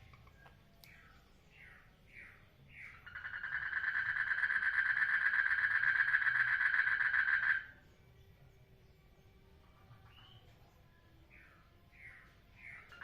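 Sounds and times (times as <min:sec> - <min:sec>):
frog pulsed trill: 0:03.0 - 0:07.8.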